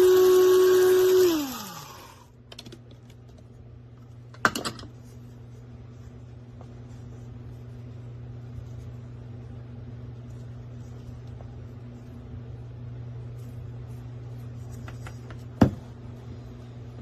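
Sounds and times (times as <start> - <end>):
coffee grinder motor whining: 0.0 - 2.3.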